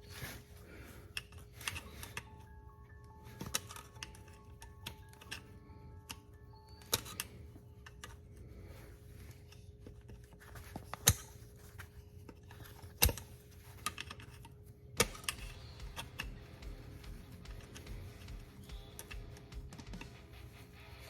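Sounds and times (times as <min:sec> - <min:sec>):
pliers clicking against bolt: 0:15.0 - 0:16.8
sharp metallic snaps: 0:15.0 - 0:20.3.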